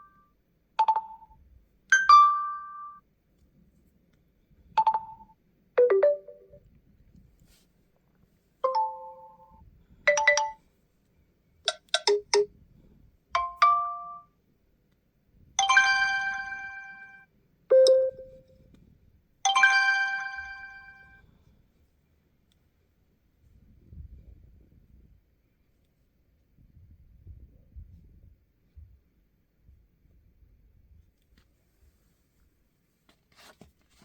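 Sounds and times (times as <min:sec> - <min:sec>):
bell-like ringtone tones: 0:00.8 - 0:03.0, 0:04.8 - 0:06.6, 0:08.6 - 0:09.5, 0:10.1 - 0:10.6, 0:13.4 - 0:14.3, 0:15.6 - 0:18.4, 0:19.5 - 0:21.2.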